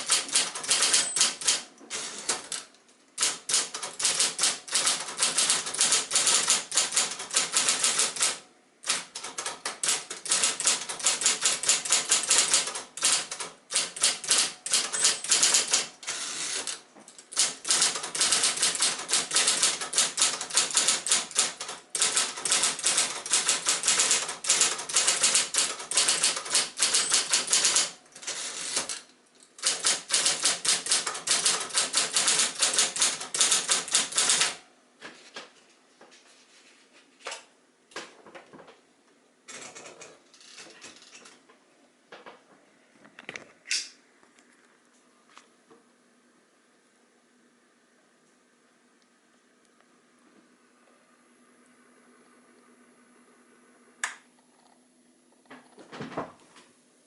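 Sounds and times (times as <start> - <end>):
electric typewriter typing: 0.0 - 34.6.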